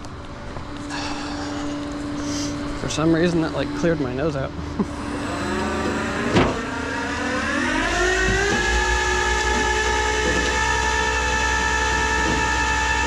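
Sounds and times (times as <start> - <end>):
truck engine revving: 4.7 - 13.0.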